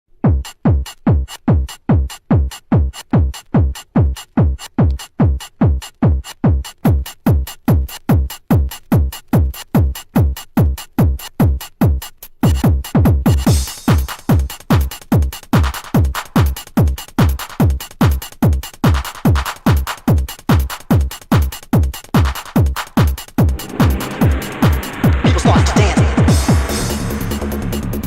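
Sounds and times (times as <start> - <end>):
drum machine kick drum: 0.2 - 28.0
hissing noise swell: 23.4 - 27.5.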